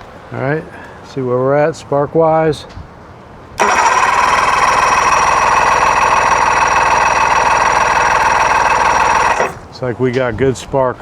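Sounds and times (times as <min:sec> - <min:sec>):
electric starter cranking outboard engine: 0:03.6 - 0:09.7.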